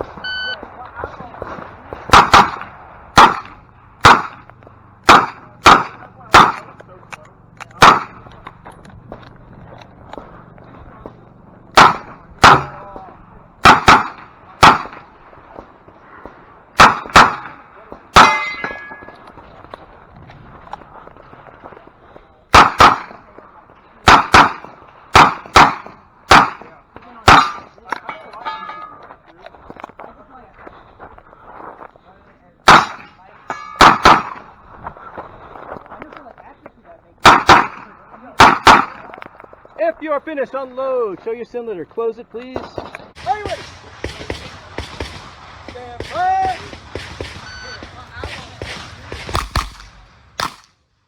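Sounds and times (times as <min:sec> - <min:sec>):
revolver gunshots: 0:00.0 - 0:08.6, 0:11.7 - 0:19.5, 0:22.5 - 0:29.0, 0:32.6 - 0:34.7, 0:37.2 - 0:39.6, 0:42.6 - 0:50.9.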